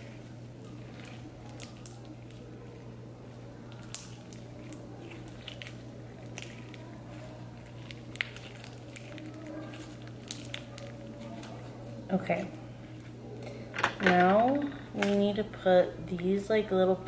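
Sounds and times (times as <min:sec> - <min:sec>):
steady low hum: 0:00.0 - 0:17.0
small wet clicks and pops: 0:00.6 - 0:02.4, 0:03.7 - 0:06.8, 0:07.6 - 0:11.6.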